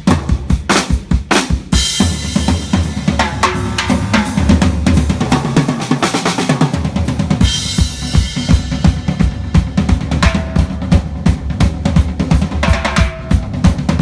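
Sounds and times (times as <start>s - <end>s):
bass drum and snare hits: 0.0s - 14.0s
cymbal wash: 2.2s - 5.8s.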